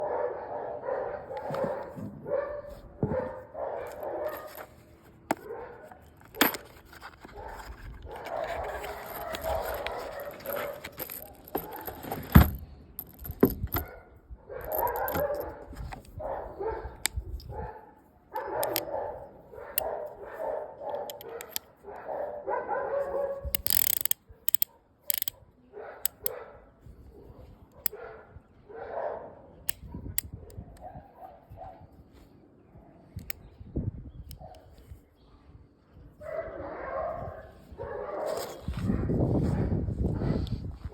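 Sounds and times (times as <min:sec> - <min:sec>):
dog barking: 0:00.0 - 0:04.6, 0:05.4 - 0:06.0, 0:07.4 - 0:10.8, 0:13.8 - 0:23.5, 0:25.7 - 0:30.1, 0:30.8 - 0:31.9, 0:36.2 - 0:40.4.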